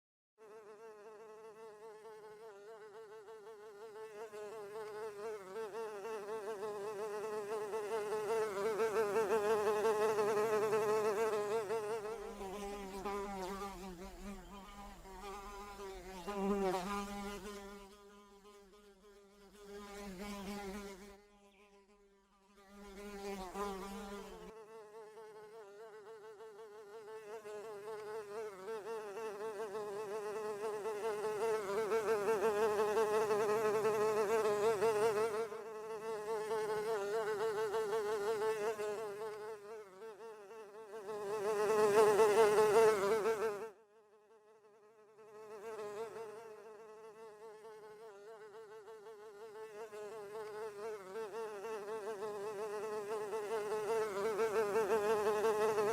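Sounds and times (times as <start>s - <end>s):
housefly buzzing: 0.4s - 55.9s.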